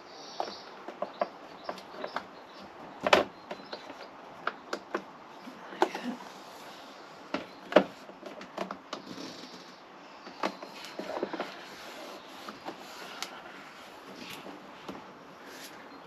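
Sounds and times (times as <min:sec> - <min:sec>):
plastic parts clicking and knocking: 0:03.0 - 0:05.1, 0:07.3 - 0:09.2, 0:10.2 - 0:11.6.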